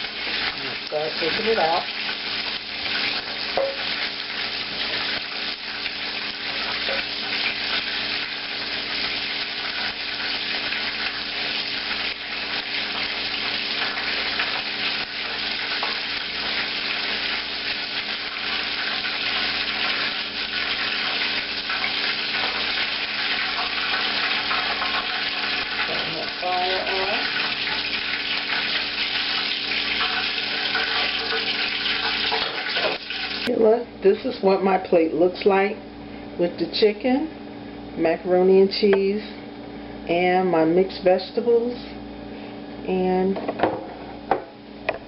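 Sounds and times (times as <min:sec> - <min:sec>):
chicken frying in hot oil: 0:00.0 - 0:33.5.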